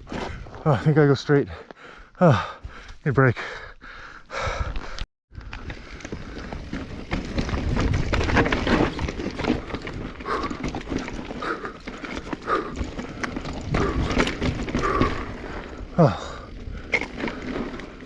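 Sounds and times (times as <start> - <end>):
rider panting: 0.0 - 0.8, 1.4 - 18.0
bike rattling over rocky trail: 5.4 - 18.0.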